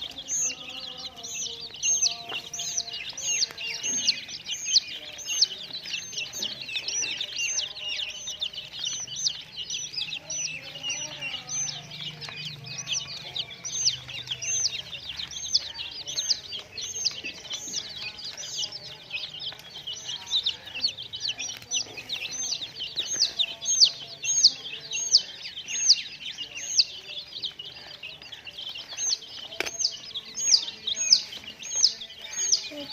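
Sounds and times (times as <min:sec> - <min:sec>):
baby chicks peeping: 0:00.0 - 0:32.9.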